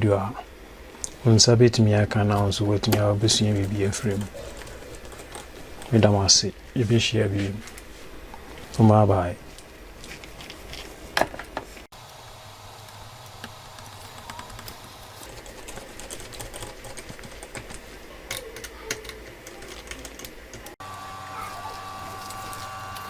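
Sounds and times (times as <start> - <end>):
steady low hum: 11.9 - 15.4.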